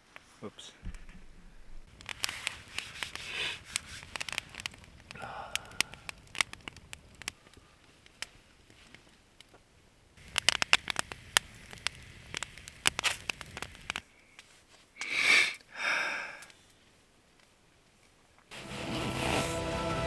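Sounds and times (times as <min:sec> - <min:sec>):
sharp crackling clicks: 0:01.9 - 0:09.6, 0:10.2 - 0:14.1
person sniffing: 0:15.0 - 0:16.4.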